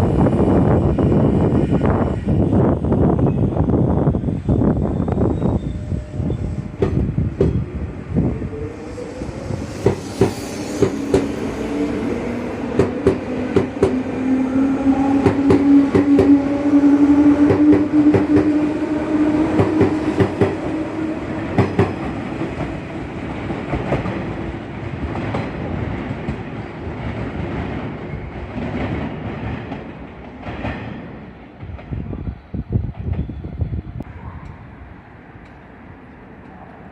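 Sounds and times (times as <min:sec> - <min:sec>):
electric train humming: 0:00.0 - 0:30.6
train wheels clicking over rail joints: 0:12.8 - 0:14.0.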